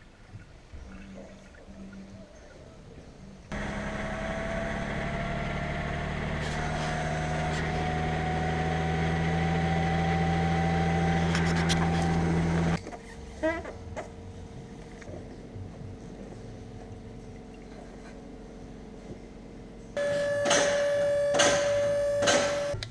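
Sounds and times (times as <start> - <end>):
diesel engine running: 3.5 - 12.8, 18.0 - 22.8
engine rattle: 3.5 - 12.8, 19.7 - 22.8.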